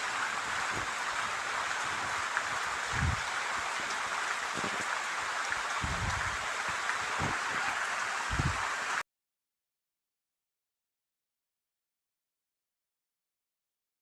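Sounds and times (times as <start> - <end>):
frying in hot oil sizzling: 0.0 - 9.0.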